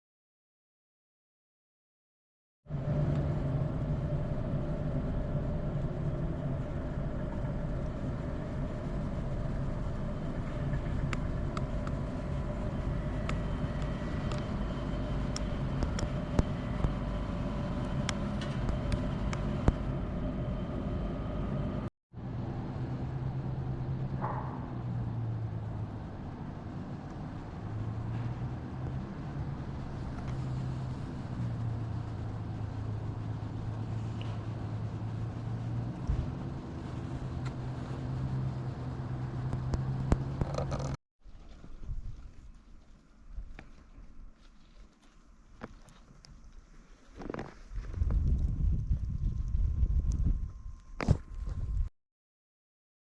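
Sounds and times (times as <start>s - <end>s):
vehicle engine drone: 2.7s - 41.9s, 42.5s - 51.9s.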